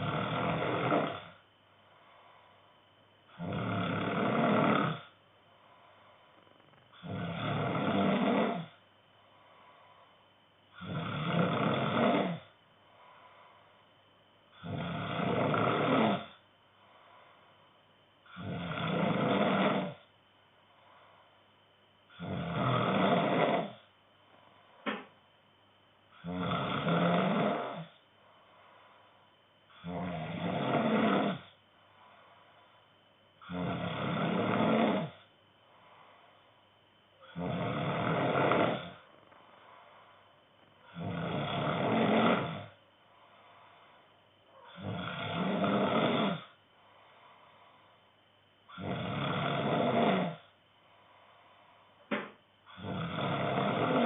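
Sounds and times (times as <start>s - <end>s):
man snoring: 0.0s - 1.4s, 3.3s - 5.2s, 6.2s - 8.8s, 10.7s - 13.2s, 14.5s - 16.4s, 18.2s - 20.1s, 22.1s - 23.9s, 26.2s - 28.0s, 29.7s - 31.6s, 33.4s - 35.3s, 37.2s - 39.1s, 40.8s - 43.5s, 44.5s - 46.6s, 48.7s - 50.6s, 52.1s - 54.0s.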